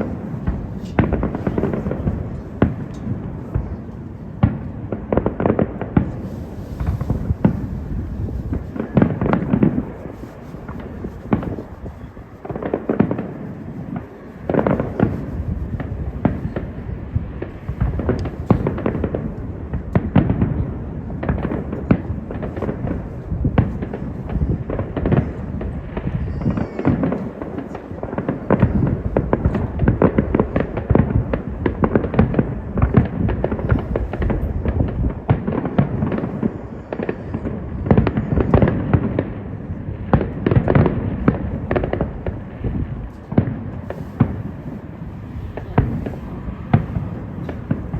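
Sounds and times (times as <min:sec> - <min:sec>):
fireworks crackling: 0:00.0 - 0:47.9
fireworks deep bangs: 0:00.0 - 0:47.9.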